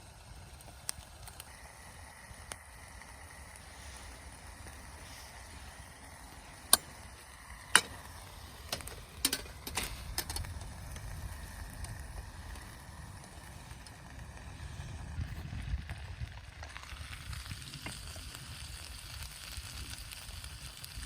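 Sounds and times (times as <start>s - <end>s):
low steady rumble: 0.0s - 20.7s
small clicks and knocks: 7.7s - 11.1s.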